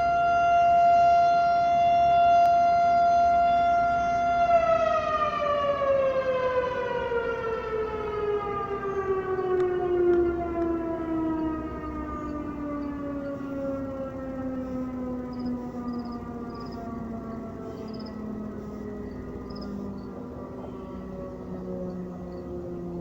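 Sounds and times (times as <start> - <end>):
tornado siren winding down: 0.0 - 23.0.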